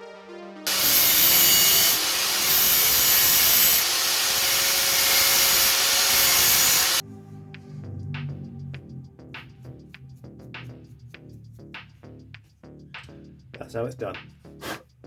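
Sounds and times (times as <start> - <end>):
power tool grinding metal: 0.7 - 7.0.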